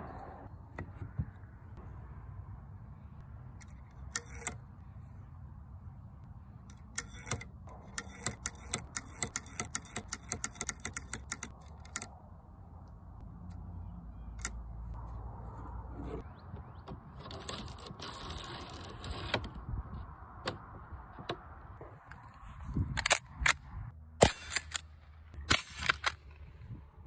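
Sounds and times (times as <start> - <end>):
rifle mechanism clicks: 3.6 - 4.6, 6.7 - 12.1, 25.5 - 26.4.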